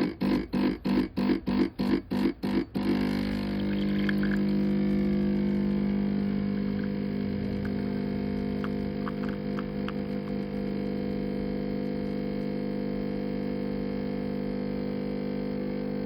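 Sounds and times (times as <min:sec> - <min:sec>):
espresso machine pump buzzing: 0:00.0 - 0:16.0.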